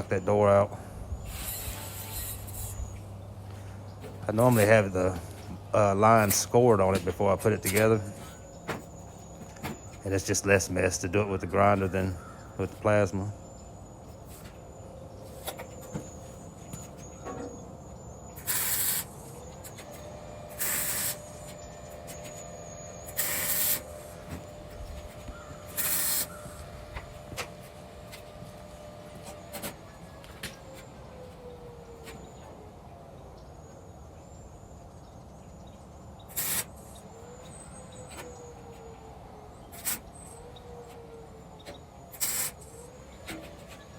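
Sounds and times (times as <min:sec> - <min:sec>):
mig tack welding bursts: 0:18.4 - 0:24.4, 0:25.0 - 0:27.0, 0:36.3 - 0:37.0, 0:42.1 - 0:42.7.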